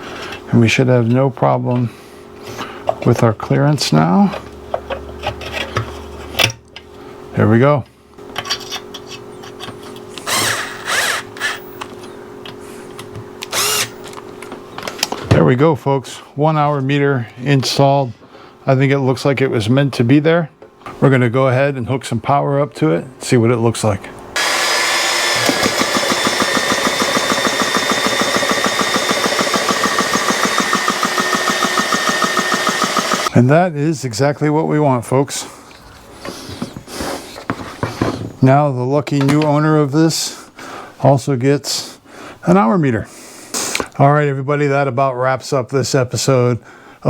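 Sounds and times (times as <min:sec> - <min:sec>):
air compressor steady noise: 0:10.0 - 0:14.2, 0:24.4 - 0:33.3
handheld power tool spinning: 0:10.2 - 0:11.7, 0:13.4 - 0:14.1, 0:24.4 - 0:33.3
pump piston strokes: 0:24.4 - 0:33.3.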